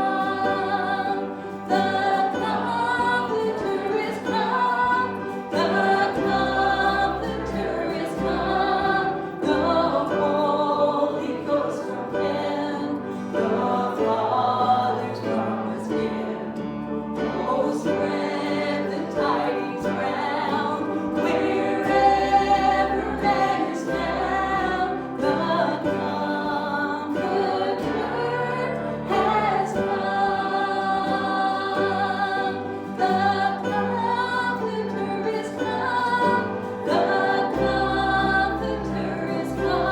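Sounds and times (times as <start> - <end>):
many voices singing worship song: 0.0 - 39.9.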